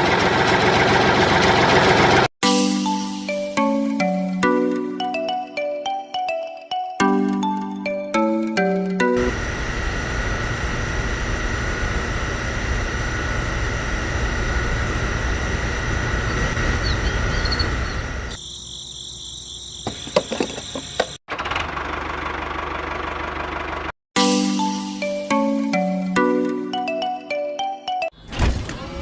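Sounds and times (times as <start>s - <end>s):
engine running with low rumble: 9.2s - 18.4s, 20.8s - 23.9s.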